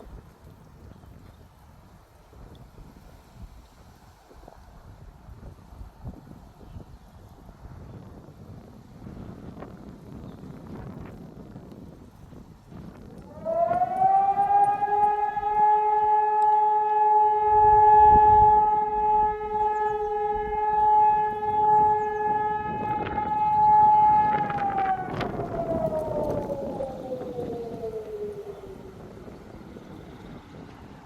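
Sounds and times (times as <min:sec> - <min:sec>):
wind on microphone: 0:00.0 - 0:31.0
civil defence siren: 0:07.6 - 0:31.0.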